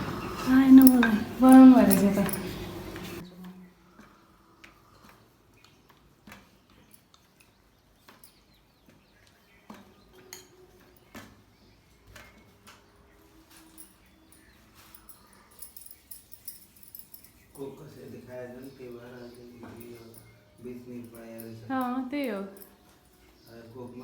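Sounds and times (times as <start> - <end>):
kitchenware clicks and taps: 0.2 - 3.2.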